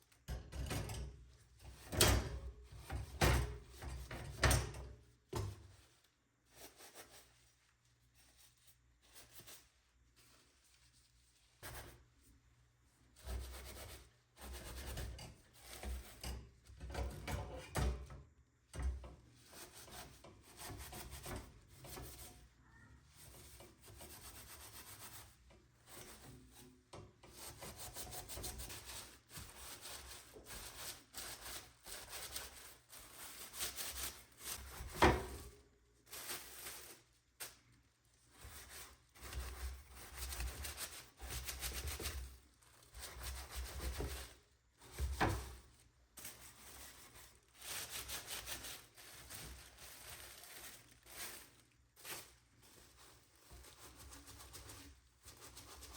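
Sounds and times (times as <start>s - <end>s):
hand scrubbing a surface: 5.7s - 16.2s, 27.3s - 55.9s.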